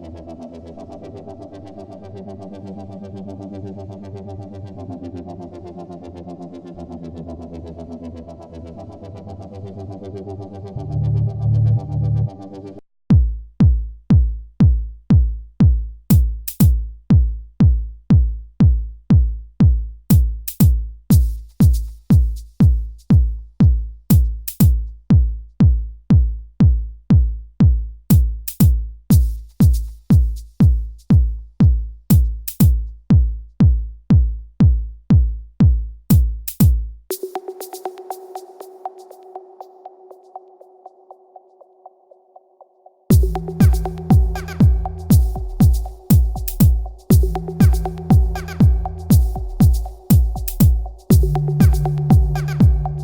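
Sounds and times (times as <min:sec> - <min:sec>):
drum machine kick drum: 0:13.1 - 0:40.7, 0:43.1 - 0:53.0
electronic dance music: 0:37.1 - 0:42.0, 0:43.1 - 0:53.0.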